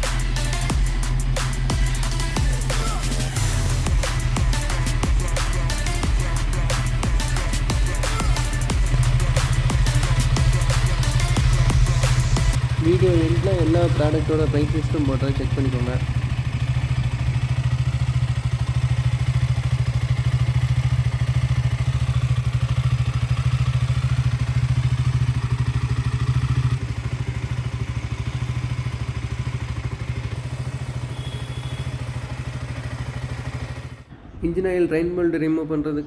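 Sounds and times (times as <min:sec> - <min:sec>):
motorcycle engine idling: 0:00.0 - 0:34.3.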